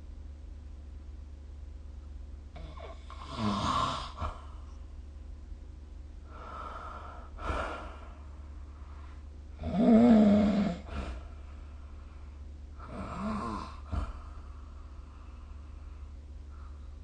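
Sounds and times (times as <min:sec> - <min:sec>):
steady low hum: 0:00.0 - 0:17.0
person snoring: 0:02.6 - 0:04.6, 0:09.6 - 0:11.3, 0:12.8 - 0:14.5.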